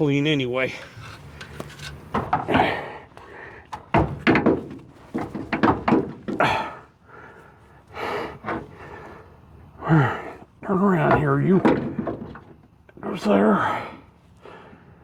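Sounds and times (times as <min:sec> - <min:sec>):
hand scraping grease from metal: 0:00.7 - 0:02.3.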